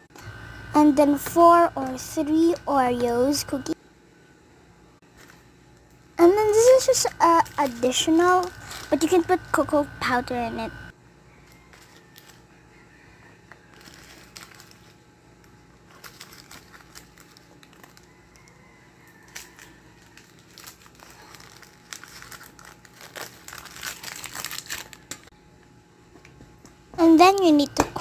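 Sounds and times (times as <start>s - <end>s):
plastic packaging crinkling: 5.1s - 9.9s, 11.5s - 12.4s, 13.6s - 25.3s.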